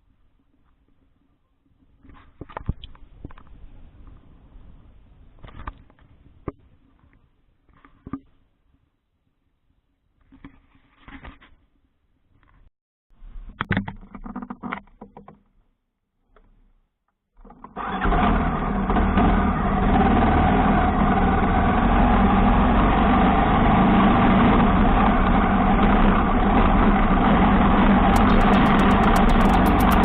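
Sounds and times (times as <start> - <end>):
motorcycle engine running: 18.3 - 30.0.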